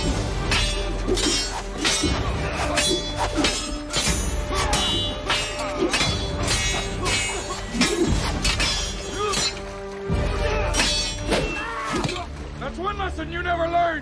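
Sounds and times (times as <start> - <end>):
swords clashing: 0.0 - 12.3
film music: 0.0 - 14.0.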